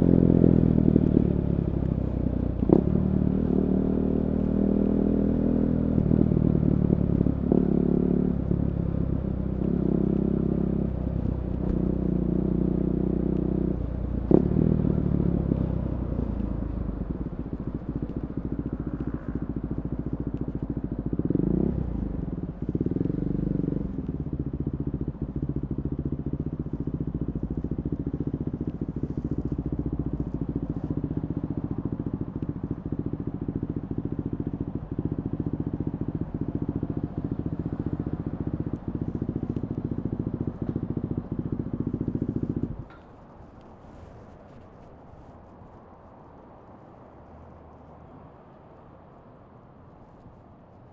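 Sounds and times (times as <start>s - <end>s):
motorcycle engine revving: 0.0s - 43.0s
motorcycle engine idling: 4.4s - 44.3s.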